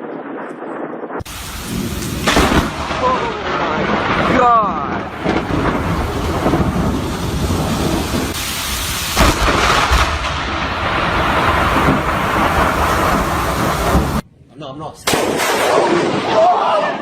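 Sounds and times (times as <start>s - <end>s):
heavy rain: 1.2s - 14.2s.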